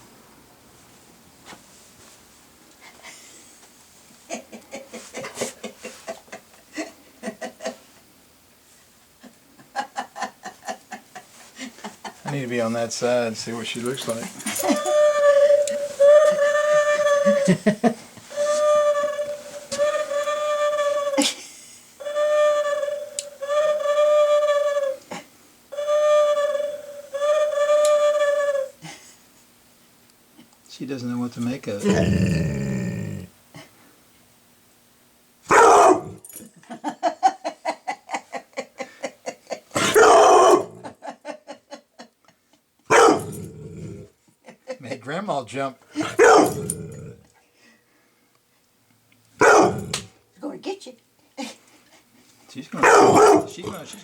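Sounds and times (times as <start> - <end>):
person laughing: 4.3 - 7.8, 14.0 - 18.6, 19.2 - 21.5
electronic owl hoot: 14.8 - 17.6, 18.3 - 21.2, 22.0 - 25.0, 25.7 - 28.8.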